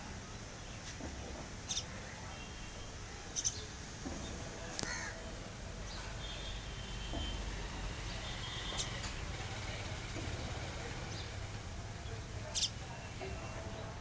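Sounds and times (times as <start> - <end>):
birds calling: 3.3 - 5.2, 12.0 - 13.0
crow cawing: 4.8 - 5.2.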